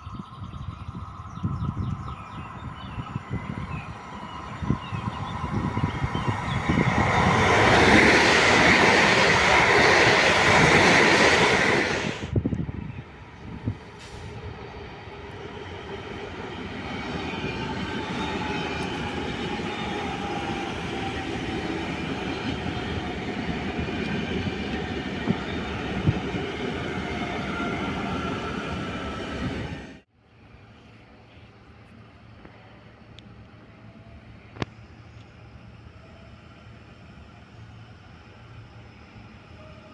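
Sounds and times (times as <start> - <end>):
train rumble: 0.0 - 39.9
train passing at speed: 0.2 - 39.9
wheels whining and squealing: 0.5 - 12.5, 13.3 - 30.0.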